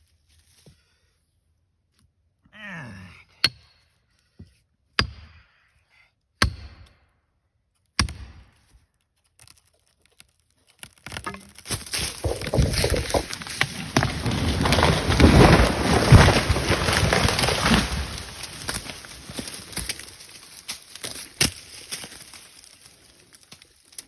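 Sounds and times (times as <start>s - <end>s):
tree trunk cracking and crashing: 9.2s - 24.0s.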